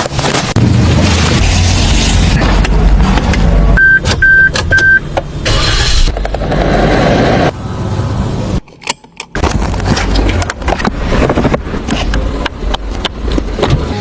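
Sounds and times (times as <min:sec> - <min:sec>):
steady rushing noise: 0:00.1 - 0:03.8
short electronic beeps: 0:03.8 - 0:05.0.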